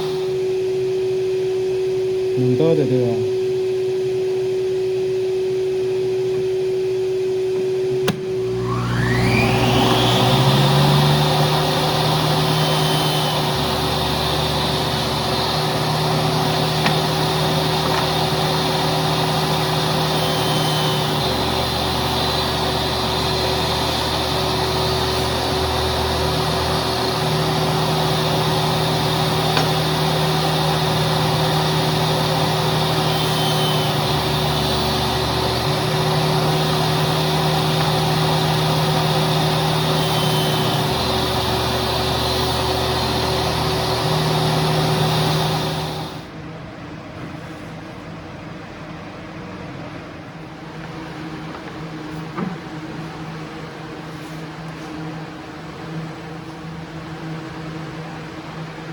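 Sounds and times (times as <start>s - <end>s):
electric motor humming: 0.0s - 1.7s, 7.4s - 46.3s.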